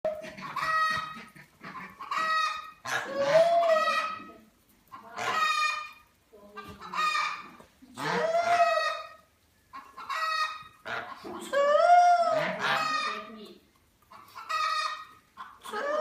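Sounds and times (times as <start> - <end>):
chickens calling: 0.1 - 16.0.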